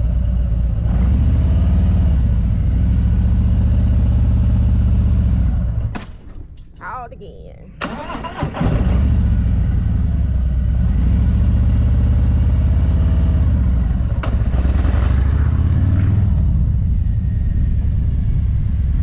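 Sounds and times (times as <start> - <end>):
motorcycle engine running: 8.0 - 19.0.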